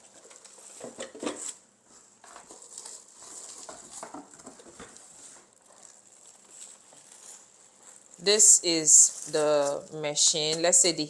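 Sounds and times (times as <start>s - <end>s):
packaging rustling and knocks: 0.0s - 8.2s.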